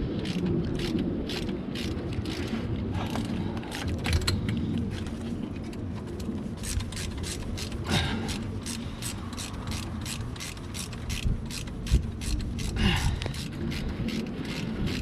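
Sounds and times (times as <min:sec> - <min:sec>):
hand ratchet clicking: 0:06.6 - 0:15.0.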